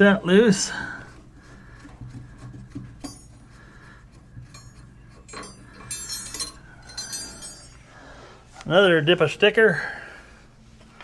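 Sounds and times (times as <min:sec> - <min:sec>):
metallic clinks of hand tools: 0:04.5 - 0:07.8.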